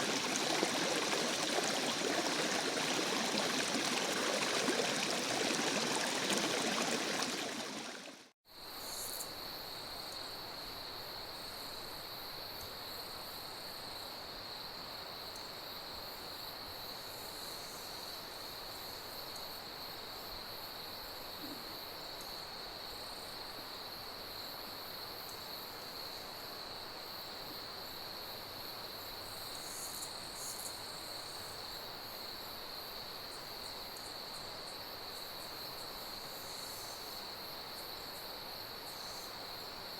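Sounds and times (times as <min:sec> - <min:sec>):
crickets chirping: 0:00.0 - 0:08.1, 0:20.1 - 0:39.9
stream water running: 0:00.0 - 0:08.3.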